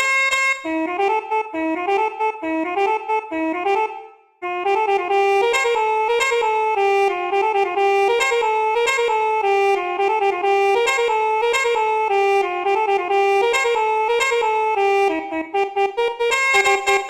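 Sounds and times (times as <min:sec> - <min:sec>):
bus air horn melody: 0:00.0 - 0:17.0.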